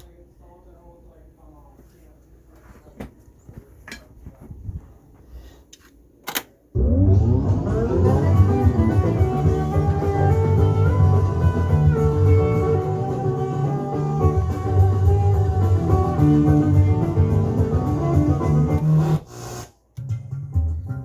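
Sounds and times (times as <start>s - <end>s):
guitar music with strong bass: 6.8s - 19.2s.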